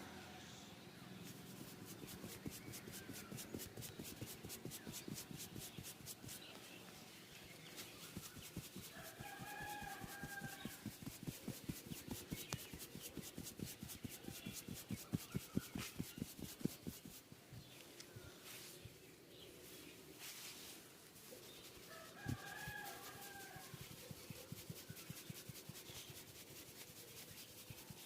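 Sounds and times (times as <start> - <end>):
hands tapping body in massage: 1.5 - 6.6, 7.8 - 17.2.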